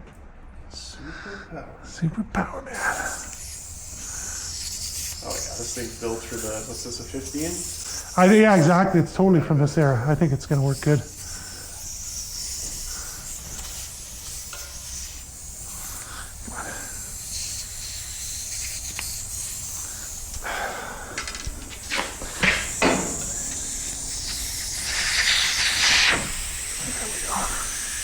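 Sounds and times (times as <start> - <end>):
air hissing out of tire valve: 2.8 - 28.0
sharp knocks and clatters: 21.1 - 26.5.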